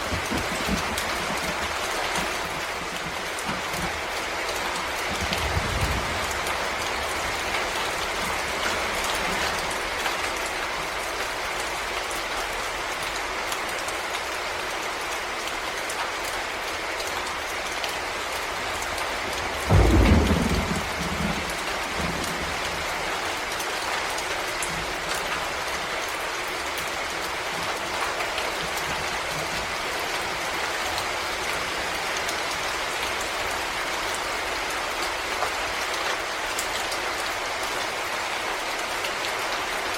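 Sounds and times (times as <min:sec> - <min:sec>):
low rumble of thunder: 0:00.0 - 0:10.0, 0:18.9 - 0:24.0
rain falling: 0:00.0 - 0:39.9.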